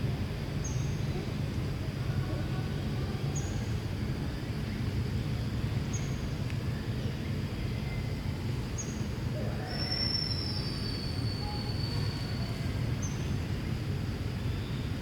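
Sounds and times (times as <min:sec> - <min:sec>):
thin high whistle: 0:09.8 - 0:12.6.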